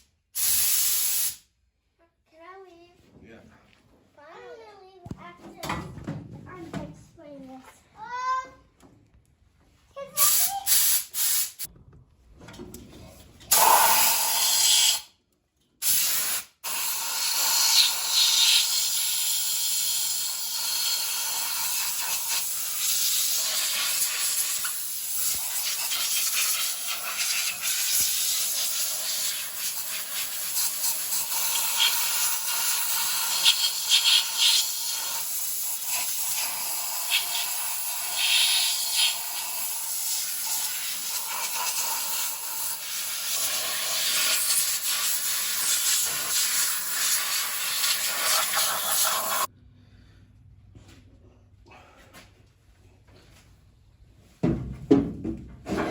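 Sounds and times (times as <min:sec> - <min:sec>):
compressed-air blow gun hissing: 0:00.4 - 0:01.4, 0:10.3 - 0:11.7, 0:15.8 - 0:49.5.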